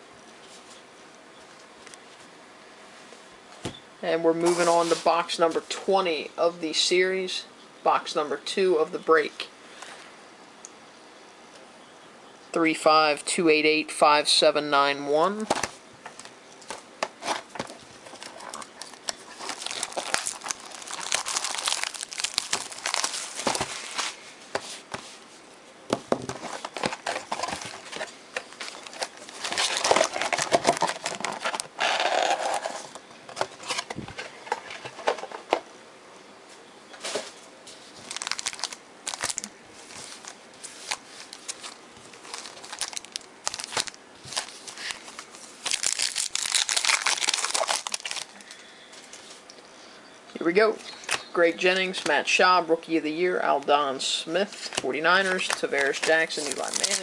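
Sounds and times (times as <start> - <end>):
card pack wrappers crinkling and tearing: 15.6 - 24.2, 26.3 - 32.9, 37.8 - 48.7, 54.6 - 57.0.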